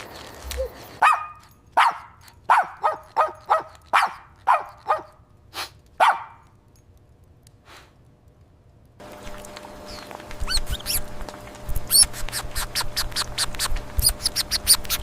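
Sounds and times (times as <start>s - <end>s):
dog barking: 0.6s - 5.2s, 6.0s - 6.4s.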